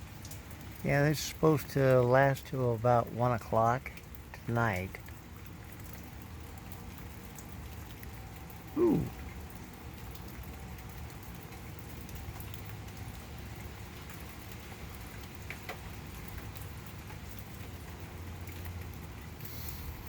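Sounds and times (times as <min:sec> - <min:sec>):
heavy rain: 0:00.0 - 0:20.0.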